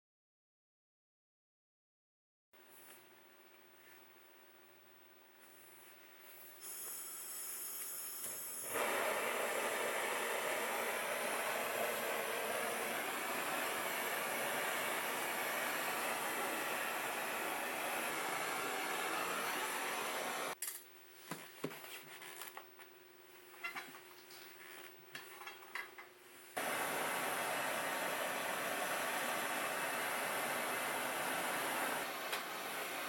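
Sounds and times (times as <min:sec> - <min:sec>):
power tool working wood: 0:08.7 - 0:20.6, 0:26.6 - 0:33.0.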